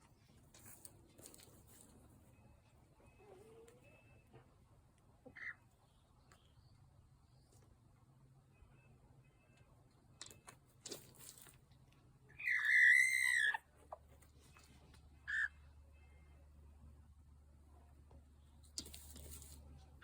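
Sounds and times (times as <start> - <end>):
chicken chirp: 3.0 - 4.4, 5.2 - 6.7, 12.3 - 14.1, 15.2 - 15.6
chicken squawking: 12.3 - 13.7, 15.2 - 15.6.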